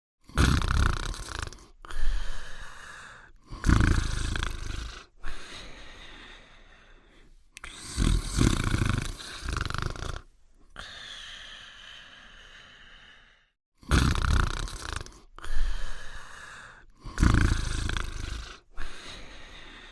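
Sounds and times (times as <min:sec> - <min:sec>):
cartoon dog snoring: 0:00.2 - 0:06.4, 0:07.6 - 0:11.2, 0:13.8 - 0:19.9.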